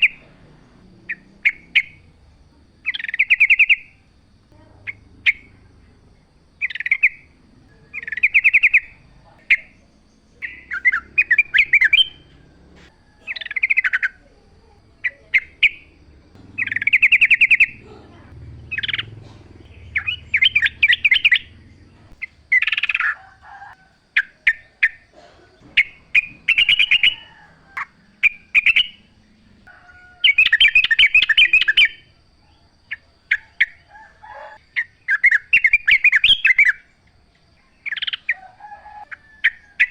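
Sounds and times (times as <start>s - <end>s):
bulbul singing bubbly phrases: 0.0s - 12.3s, 13.2s - 23.0s.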